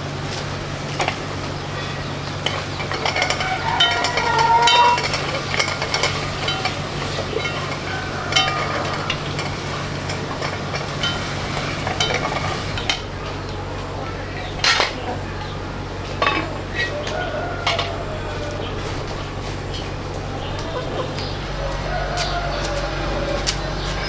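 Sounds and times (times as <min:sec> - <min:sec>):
utensils clinking: 0:00.0 - 0:24.0.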